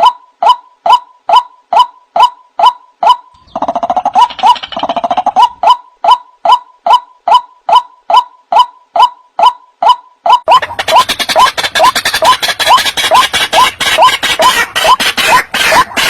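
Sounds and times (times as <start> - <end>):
bird calling pitched notes: 0.0 - 16.0
rapid bird chattering: 3.4 - 5.8, 10.5 - 16.0.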